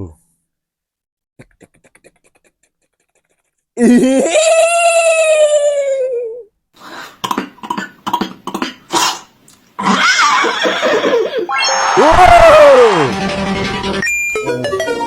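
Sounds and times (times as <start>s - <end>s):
hissing mouth noise with gliding tones: 6.8s - 9.4s
mouth clicks and pops: 7.2s - 9.6s.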